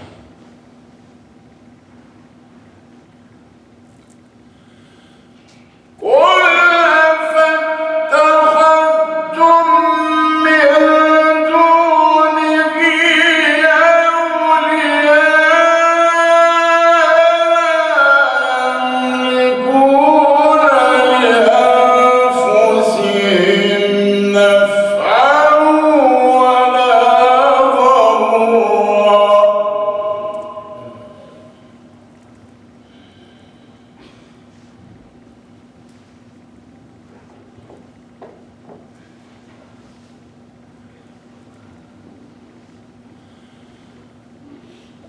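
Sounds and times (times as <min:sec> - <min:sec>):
man chanting melodic recitation: 0:06.0 - 0:31.7.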